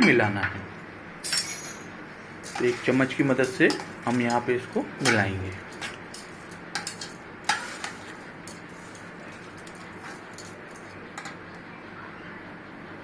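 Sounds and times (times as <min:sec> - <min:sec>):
spoon stirring food: 0:02.3 - 0:11.5.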